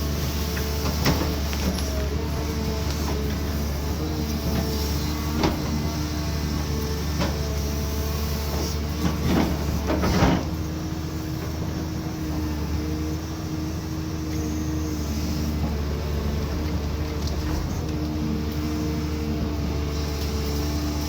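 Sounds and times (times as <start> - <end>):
diesel engine under load: 0.0 - 21.0.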